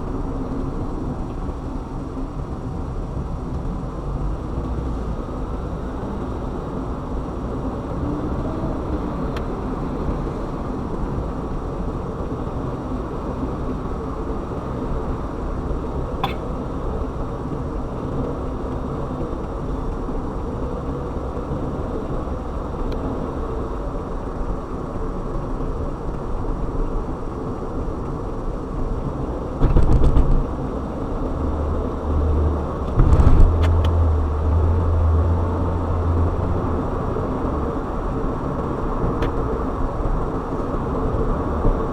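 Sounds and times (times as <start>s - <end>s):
car driving road noise: 0.0s - 41.9s
deep drone: 31.0s - 41.9s.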